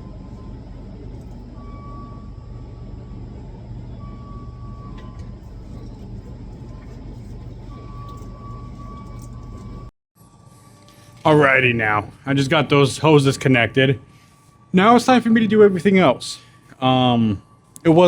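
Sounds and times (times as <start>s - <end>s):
machinery humming: 0.0s - 18.0s.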